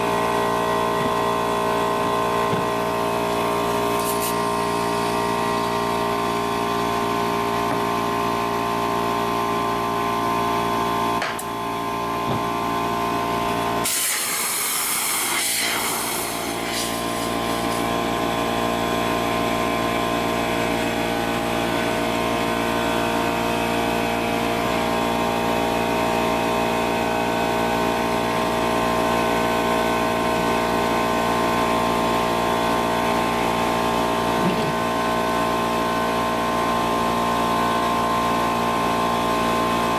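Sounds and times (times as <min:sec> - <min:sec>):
motor running steadily: 0:00.0 - 0:39.9
hissing burst: 0:13.8 - 0:17.8.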